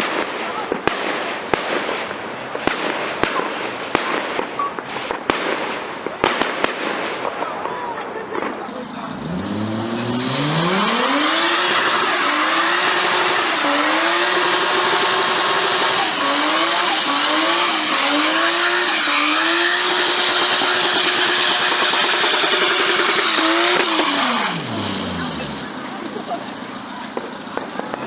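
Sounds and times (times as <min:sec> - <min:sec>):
car engine revving: 0:08.7 - 0:28.0
tyres squealing: 0:09.1 - 0:27.5.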